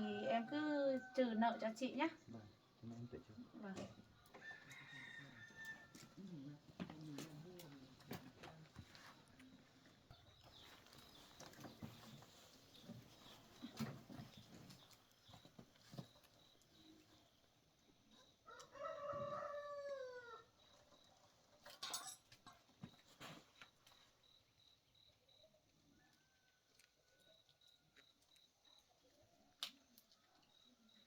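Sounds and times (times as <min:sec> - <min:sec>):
rooster crowing: 0:00.0 - 0:01.7, 0:04.4 - 0:06.2, 0:18.4 - 0:20.5.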